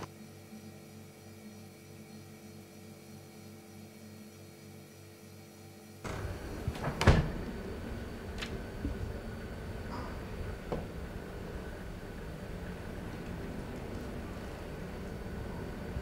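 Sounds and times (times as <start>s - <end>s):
steady low hum: 0.0s - 16.0s
room noise: 5.5s - 16.0s.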